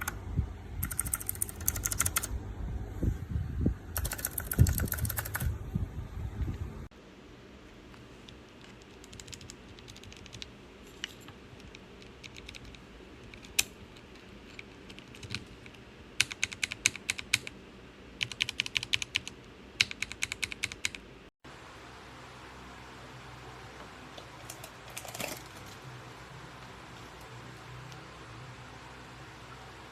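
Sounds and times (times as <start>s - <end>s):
mechanical keyboard typing: 0.8s - 2.3s, 3.9s - 5.5s, 8.6s - 10.5s, 11.6s - 17.5s, 18.2s - 21.0s.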